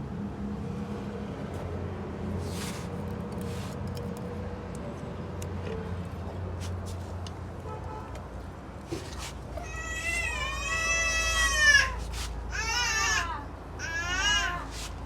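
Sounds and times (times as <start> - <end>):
cat meowing: 9.6 - 14.9.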